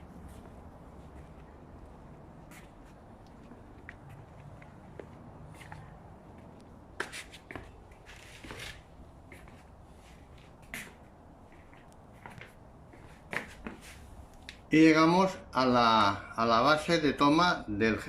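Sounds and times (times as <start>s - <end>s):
short rustle: 7.0s - 14.2s.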